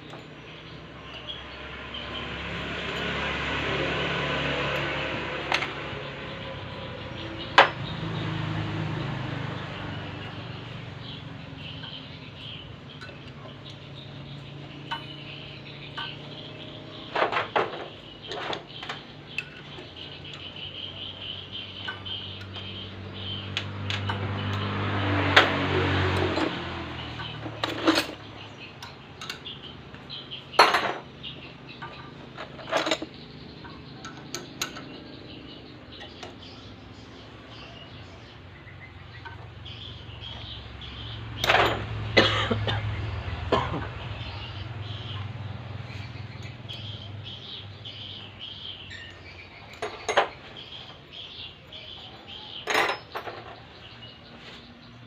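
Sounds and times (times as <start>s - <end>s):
metal tools clinking: 10.2s - 22.8s, 25.3s - 35.2s, 41.4s - 42.8s, 47.9s - 54.0s.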